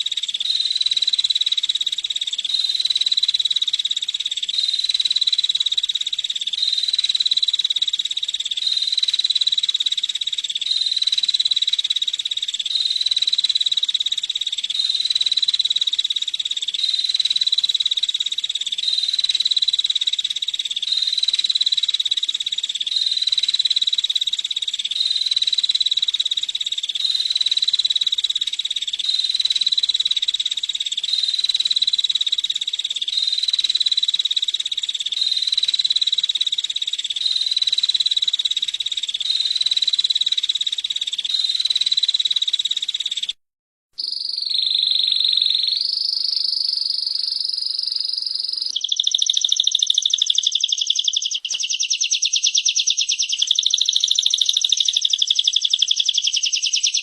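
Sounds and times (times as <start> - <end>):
bird high-pitched trill: 20.8 - 22.3, 24.9 - 43.3, 44.0 - 57.0.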